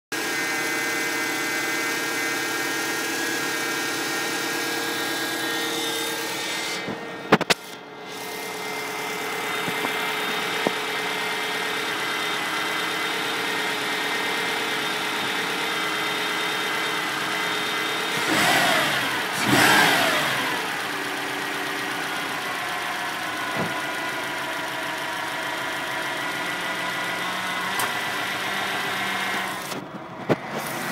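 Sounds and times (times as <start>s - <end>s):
car engine running: 0.1s - 30.9s
loud steady whine: 0.2s - 14.5s.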